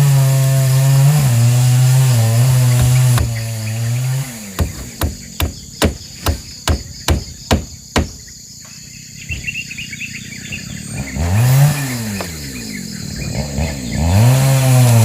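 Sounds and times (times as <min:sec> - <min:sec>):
chainsaw revving: 0:00.0 - 0:05.6, 0:10.6 - 0:15.0.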